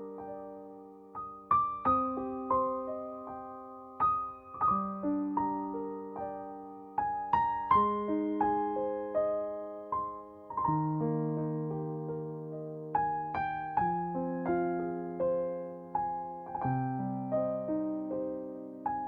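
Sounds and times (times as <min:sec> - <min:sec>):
gentle piano melody: 0:00.0 - 0:19.0.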